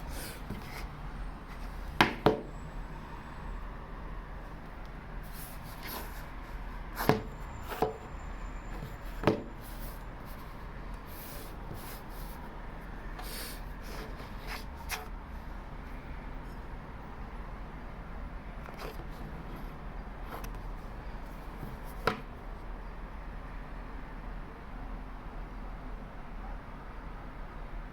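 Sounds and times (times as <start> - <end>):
sharp knocks handling a box: 2.0 - 2.5, 7.0 - 8.1, 8.8 - 9.6, 21.6 - 22.3.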